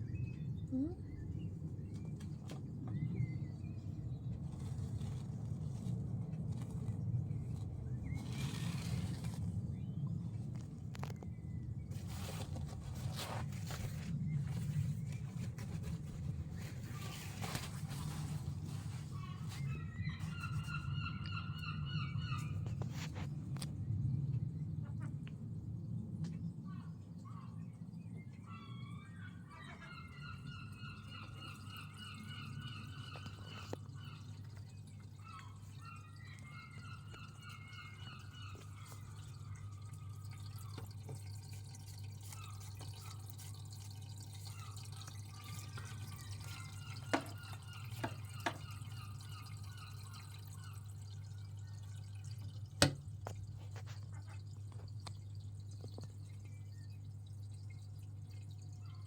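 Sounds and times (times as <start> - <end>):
seagulls calling: 18.7 - 23.1, 28.4 - 40.8, 44.5 - 51.2.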